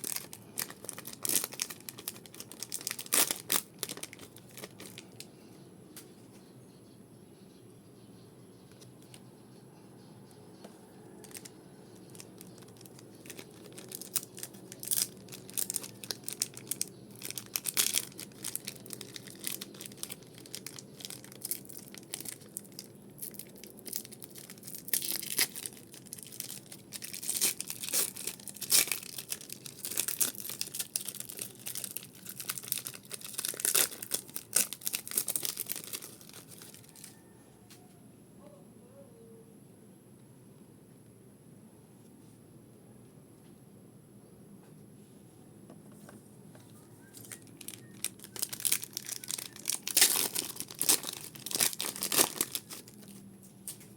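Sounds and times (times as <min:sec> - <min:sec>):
card pack wrappers crinkling: 0:00.0 - 0:05.3, 0:11.2 - 0:37.2, 0:47.1 - 0:53.3.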